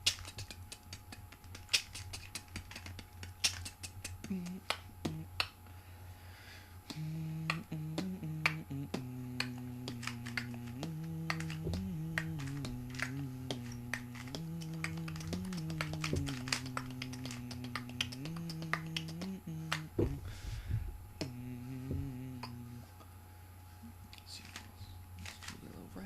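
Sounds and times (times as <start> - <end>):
low held tune: 6.9 - 23.2
puzzle cube clicking: 9.9 - 10.7, 11.3 - 19.9.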